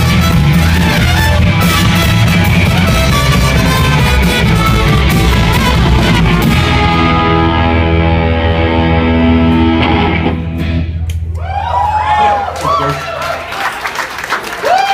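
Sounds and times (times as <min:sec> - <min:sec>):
electric guitar: 0:00.0 - 0:12.0
bass guitar: 0:00.0 - 0:12.8.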